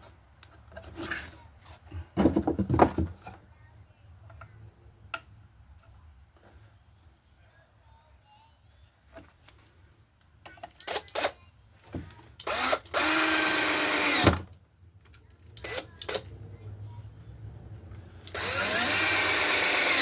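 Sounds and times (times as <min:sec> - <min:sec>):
power drill driving screws: 0:12.4 - 0:14.4, 0:15.6 - 0:16.2, 0:18.2 - 0:20.0.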